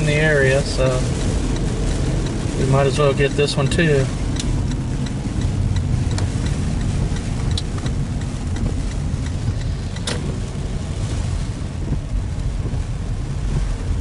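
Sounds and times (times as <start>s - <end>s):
car engine and road rumble: 0.0s - 14.0s
light ticks: 0.6s - 10.4s.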